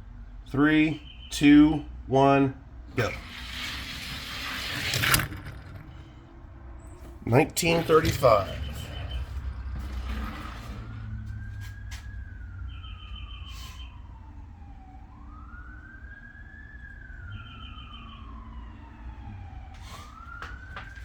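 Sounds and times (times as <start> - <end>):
emergency siren wailing: 6.9 - 21.0.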